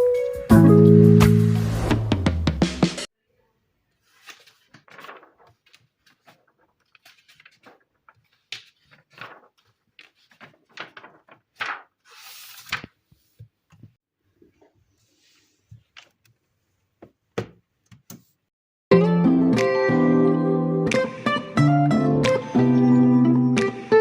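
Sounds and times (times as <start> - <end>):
longer rustle: 4.1 - 12.8.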